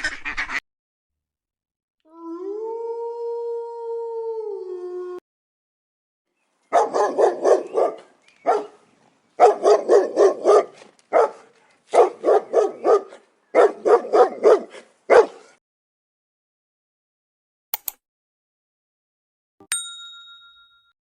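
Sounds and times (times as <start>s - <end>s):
dog barking: 6.7s - 8.8s, 9.4s - 15.6s.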